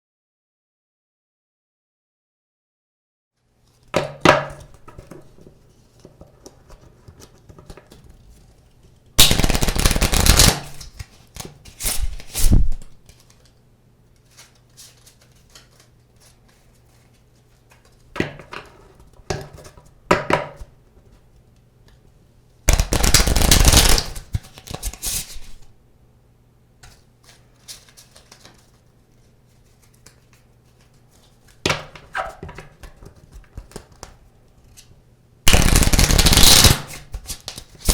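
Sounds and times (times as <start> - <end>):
playing cards being shuffled: 9.2 - 13.4, 22.7 - 25.6, 35.5 - 37.9.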